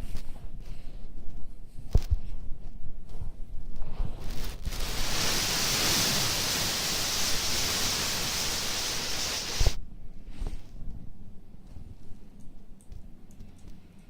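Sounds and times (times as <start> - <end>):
air conditioner air hissing: 4.1 - 10.6.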